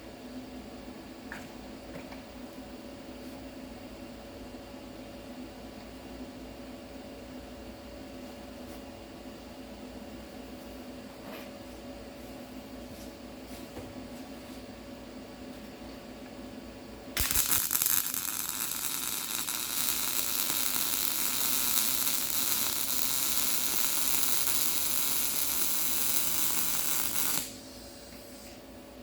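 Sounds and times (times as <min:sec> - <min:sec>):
steady hum: 0:00.0 - 0:29.0
welding arc crackling hiss: 0:17.2 - 0:28.6.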